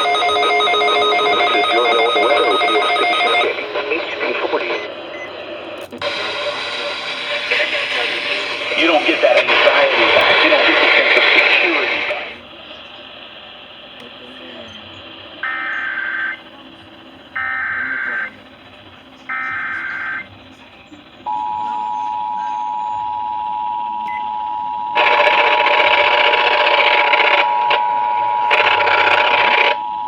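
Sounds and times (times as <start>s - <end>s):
two-tone attention signal: 0.0s - 4.1s, 21.3s - 26.2s
warbling data tones: 0.0s - 5.0s
radio static hiss: 0.0s - 22.7s, 24.9s - 30.0s.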